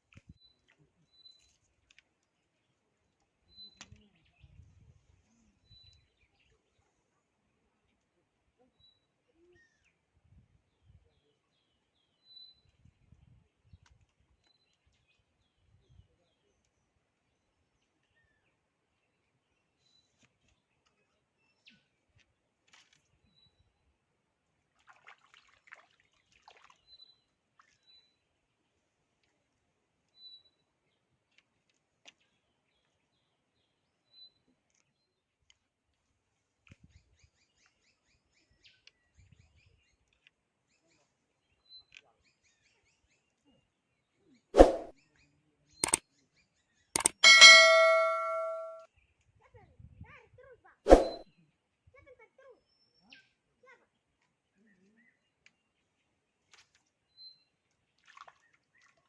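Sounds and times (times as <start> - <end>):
faint high chirps and clicks: 3.5 - 4.2, 38.7 - 39.2, 45.8 - 46.0, 47.0 - 49.3, 55.4 - 55.6
high bird chirps: 47.0 - 48.8.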